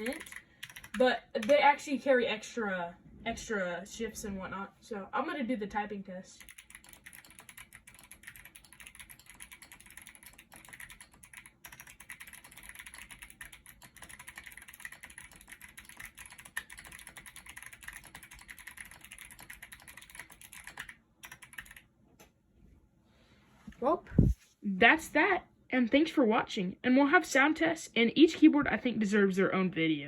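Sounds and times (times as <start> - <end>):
rapid mechanical keyboard typing: 0.0 - 1.8, 6.4 - 21.8.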